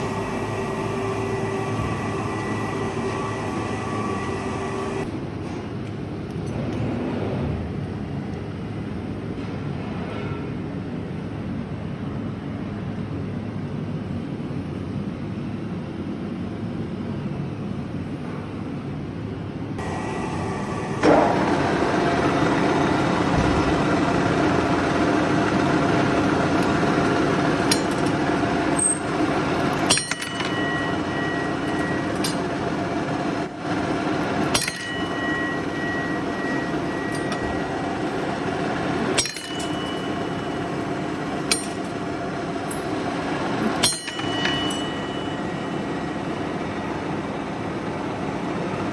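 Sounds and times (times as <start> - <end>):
lathe motor humming: 0.0 - 5.1, 19.8 - 48.9
sharp metallic clicks: 34.3 - 45.0.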